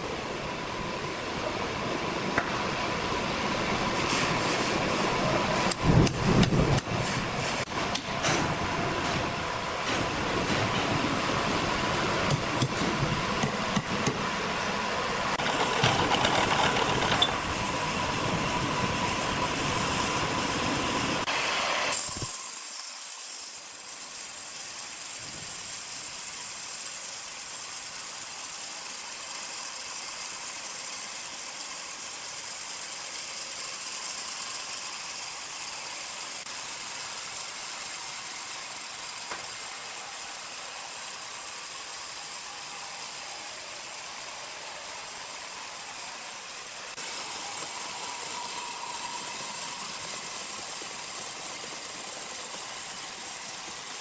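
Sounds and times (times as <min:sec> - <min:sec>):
sawmill machinery rattling and whining: 0:00.0 - 0:54.0
high-pitched hiss: 0:21.9 - 0:54.0.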